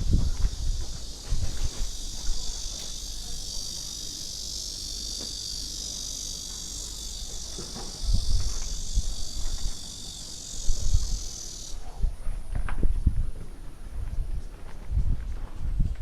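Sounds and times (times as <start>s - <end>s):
insects chirping: 0.0s - 13.2s.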